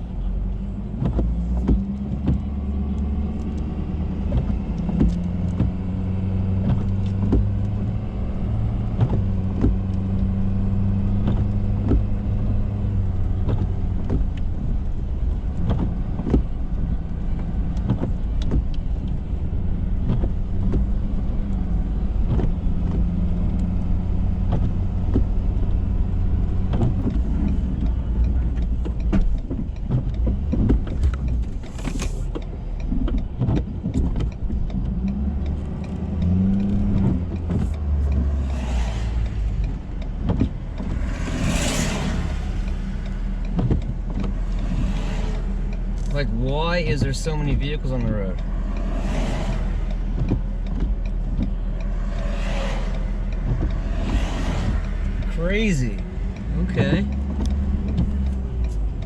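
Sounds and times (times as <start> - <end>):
pickup truck engine droning: 0.0 - 59.0
short knocks and clicks: 0.9 - 59.0.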